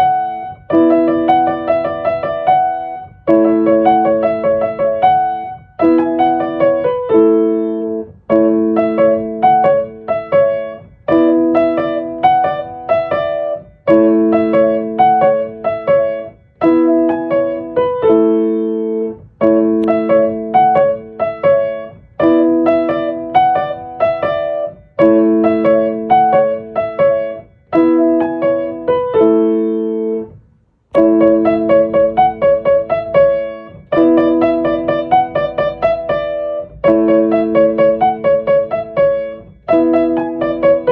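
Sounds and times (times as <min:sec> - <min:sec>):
gentle solo piano piece: 0:00.0 - 0:40.9.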